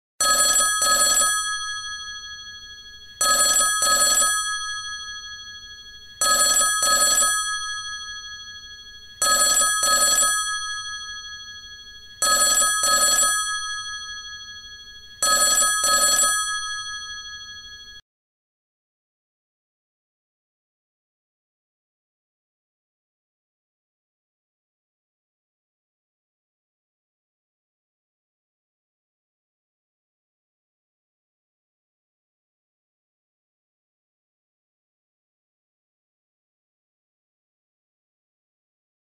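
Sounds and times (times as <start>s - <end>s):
telephone bell ringing: 0.2s - 18.0s.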